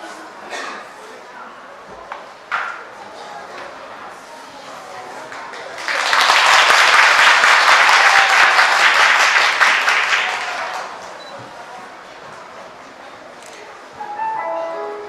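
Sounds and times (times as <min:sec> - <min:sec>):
audience applauding: 0:05.3 - 0:11.2.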